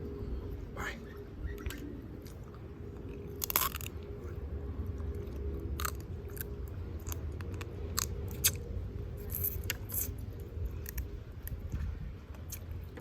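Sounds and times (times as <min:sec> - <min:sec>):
chewing: 0:01.5 - 0:13.0
crab shell cracking between teeth: 0:03.1 - 0:04.0, 0:05.2 - 0:11.6.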